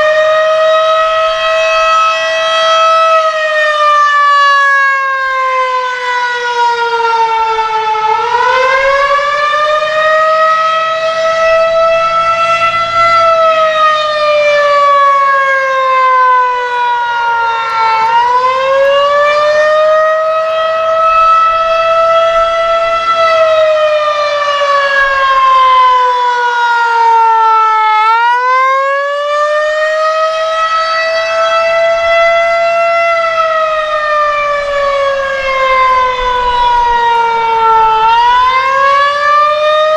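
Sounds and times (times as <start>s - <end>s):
wavering siren wail: 0.0s - 39.9s.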